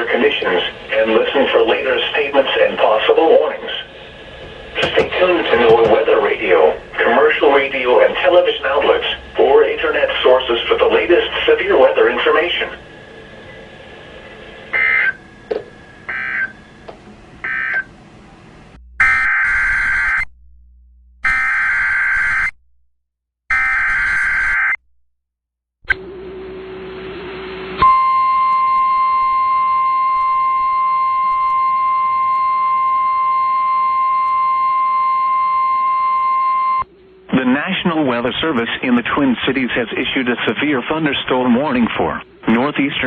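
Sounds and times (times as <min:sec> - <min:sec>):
radio hiss: 0:00.0 - 0:15.2, 0:37.3 - 0:43.0
steady warning alarm tone: 0:00.0 - 0:17.9, 0:18.8 - 0:20.3, 0:21.2 - 0:22.5, 0:27.8 - 0:37.3.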